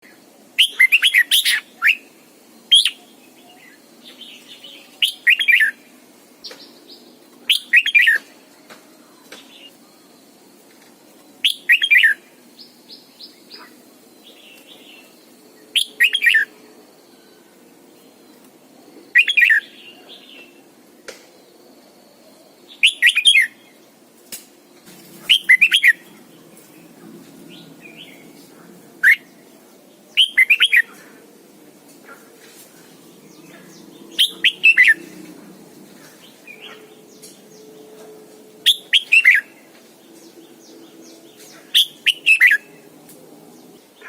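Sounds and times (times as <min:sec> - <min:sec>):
bulbul singing: 0:00.6 - 0:08.3, 0:11.4 - 0:16.5, 0:19.0 - 0:20.6, 0:22.6 - 0:23.8, 0:25.1 - 0:31.1, 0:32.9 - 0:35.4, 0:38.6 - 0:42.9
faint bird chirps: 0:11.4 - 0:20.6, 0:25.0 - 0:31.3, 0:32.0 - 0:42.9.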